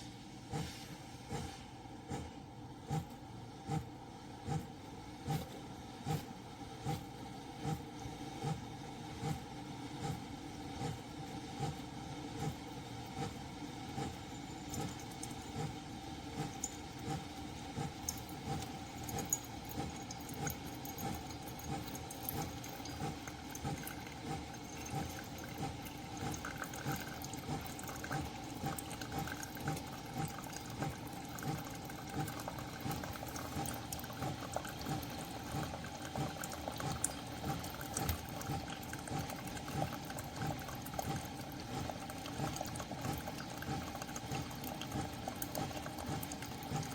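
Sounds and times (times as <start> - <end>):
coffee machine humming: 0.0 - 46.9
liquid pouring into cup: 14.4 - 46.9.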